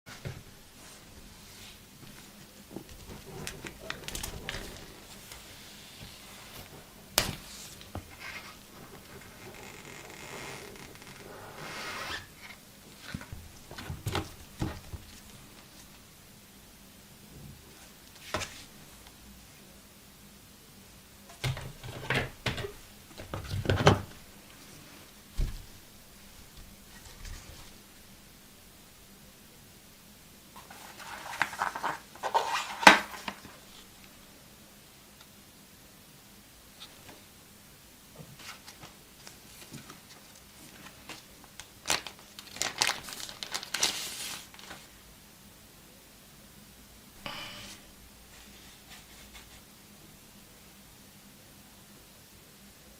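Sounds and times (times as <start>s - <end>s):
hands handling packaging: 30.6s - 33.7s, 38.4s - 44.9s
packaging crinkling: 40.2s - 44.9s.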